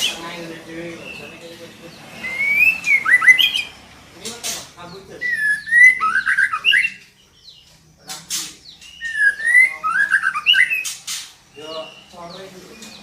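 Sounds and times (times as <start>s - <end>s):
harsh bird rasp: 0.0s - 13.0s
bird whistling calls: 2.2s - 3.8s, 5.2s - 7.1s, 8.4s - 13.0s.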